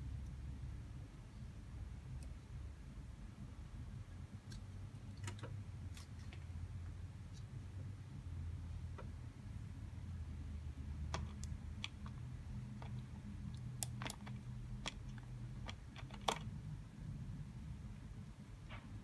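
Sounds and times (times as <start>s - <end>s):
low steady hum: 0.0s - 19.0s
plastic pieces clicking: 12.8s - 16.5s.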